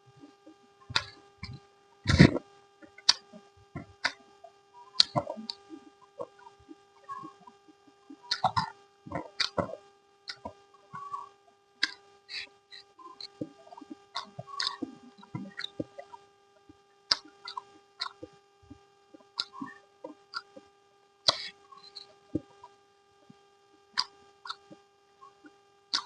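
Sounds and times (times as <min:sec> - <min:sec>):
steady low hum: 0:00.0 - 0:26.0
mouth smacks and chewing: 0:05.0 - 0:06.5, 0:13.2 - 0:16.1, 0:17.1 - 0:18.3.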